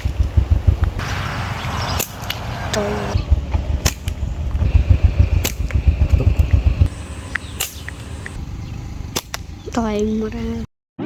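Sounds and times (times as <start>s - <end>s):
low buffeting rumble: 0.0s - 10.7s
slingshot bands snapping: 7.4s - 8.4s.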